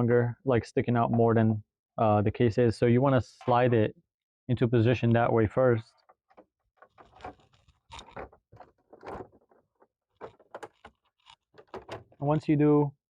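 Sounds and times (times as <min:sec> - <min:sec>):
plastic scraping and clicking: 0:05.8 - 0:12.3.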